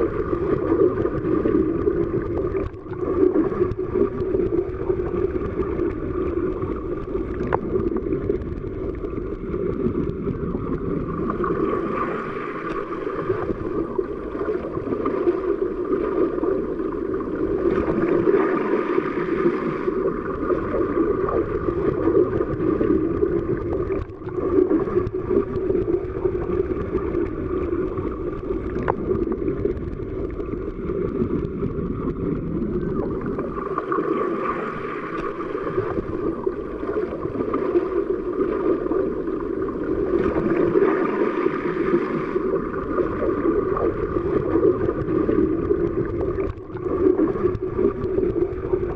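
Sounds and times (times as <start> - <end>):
muffled underwater water rush: 0.0 - 48.9
faint clicks: 5.7 - 10.8, 26.8 - 33.5.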